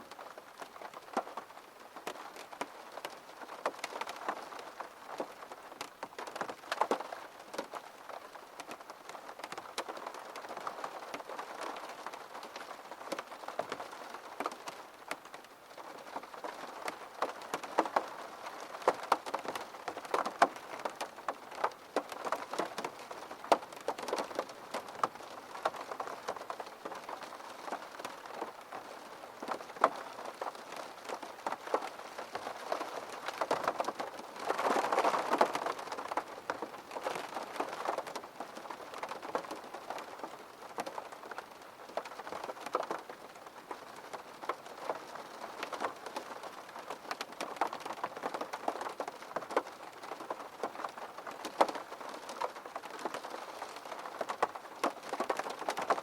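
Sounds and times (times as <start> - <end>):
steady rain: 0.0 - 56.0
raindrops tapping on hard surface: 0.1 - 56.0.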